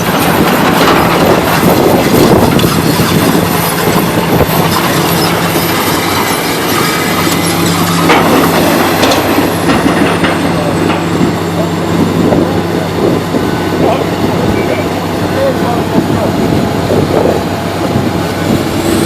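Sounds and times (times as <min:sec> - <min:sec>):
machine knocks and clanks: 0:00.0 - 0:13.2
excavator diesel engine running: 0:00.0 - 0:19.0.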